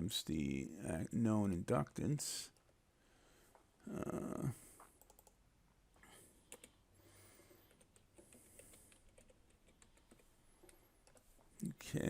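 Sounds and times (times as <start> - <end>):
faint keyboard typing: 2.5 - 2.8, 4.7 - 5.4, 6.0 - 6.8, 7.5 - 11.8.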